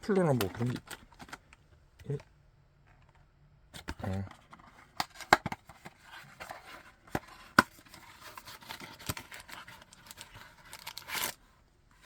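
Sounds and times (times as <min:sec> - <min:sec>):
packaging rustling: 0:00.0 - 0:01.6, 0:04.1 - 0:11.5.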